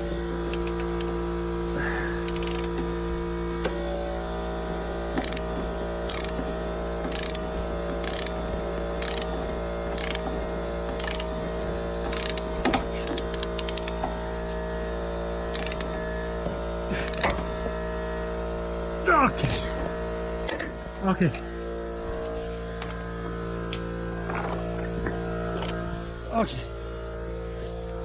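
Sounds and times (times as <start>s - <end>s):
steady low hum: 0.0s - 28.0s
torque wrench ratcheting clicks: 0.5s - 1.2s, 2.1s - 2.9s, 5.1s - 14.0s, 15.5s - 16.0s, 17.0s - 17.4s.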